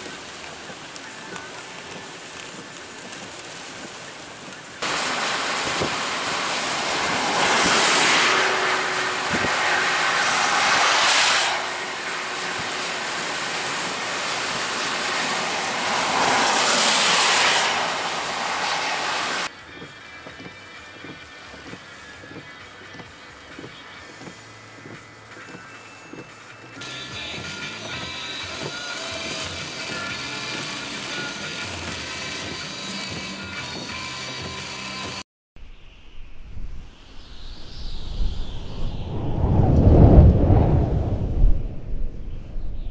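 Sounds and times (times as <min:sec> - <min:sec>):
steady rain: 0:00.0 - 0:35.2
wind rushing: 0:04.8 - 0:19.5, 0:36.0 - 0:42.9.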